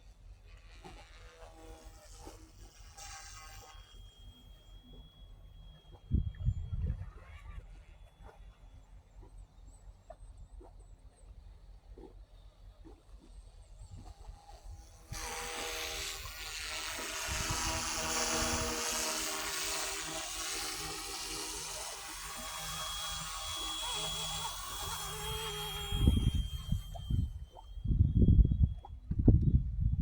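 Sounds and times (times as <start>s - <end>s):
model helicopter motor whining: 0.0s - 9.8s, 11.6s - 27.8s
high steady tone: 15.2s - 28.9s
wind buffeting microphone: 25.7s - 30.0s.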